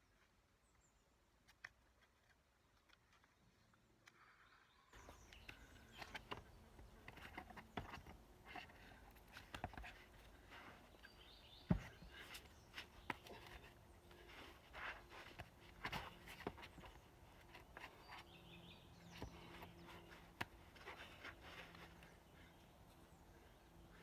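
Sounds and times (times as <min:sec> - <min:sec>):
shoes and hands scuffing rock: 0:05.0 - 0:18.4, 0:19.0 - 0:23.2
dull thump: 0:11.7 - 0:12.1.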